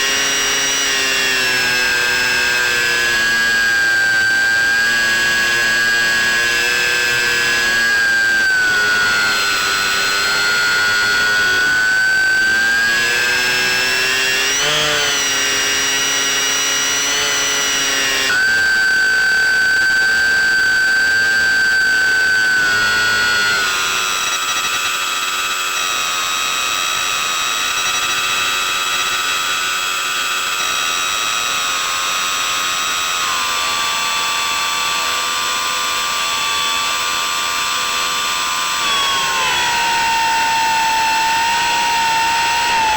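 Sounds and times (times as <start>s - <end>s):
model plane motor whine: 0.0s - 42.9s.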